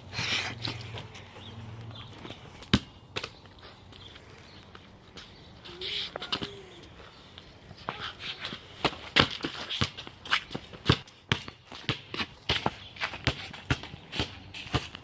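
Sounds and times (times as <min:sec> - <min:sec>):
basketball bouncing on hard court: 0:10.8 - 0:14.9.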